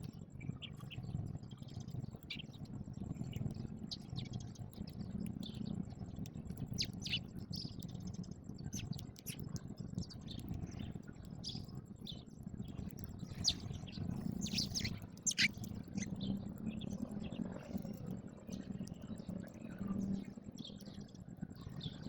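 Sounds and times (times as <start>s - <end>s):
sparrows chirping: 5.4s - 8.0s, 10.3s - 17.5s.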